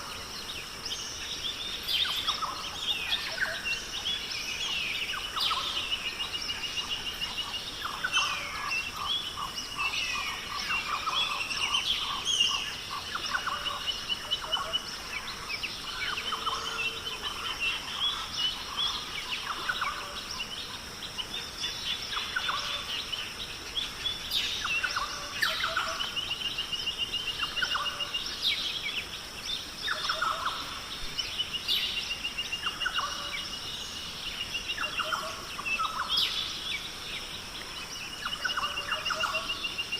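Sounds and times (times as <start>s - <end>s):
birds chirping and trilling: 0.0s - 39.9s
steady high hiss: 0.0s - 39.9s.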